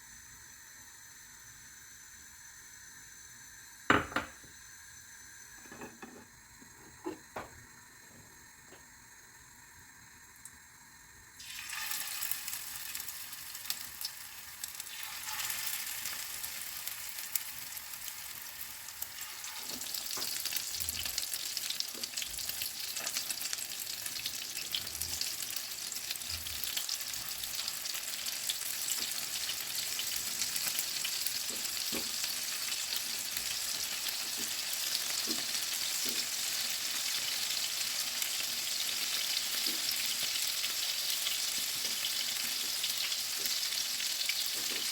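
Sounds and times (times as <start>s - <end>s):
food sizzling in hot oil: 0.0s - 44.9s.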